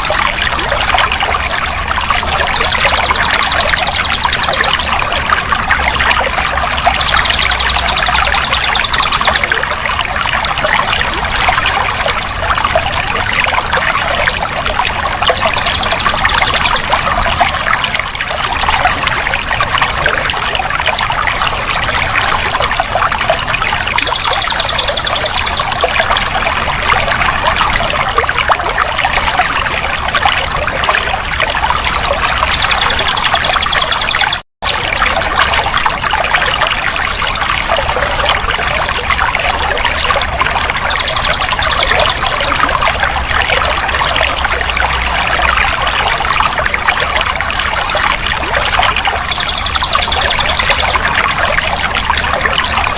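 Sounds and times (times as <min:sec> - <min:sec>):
water running and trickling: 0:00.0 - 0:52.9.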